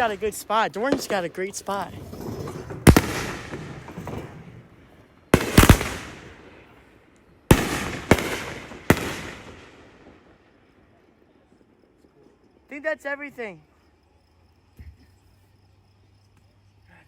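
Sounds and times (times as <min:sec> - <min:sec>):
fireworks booming with echo: 0:00.0 - 0:11.3.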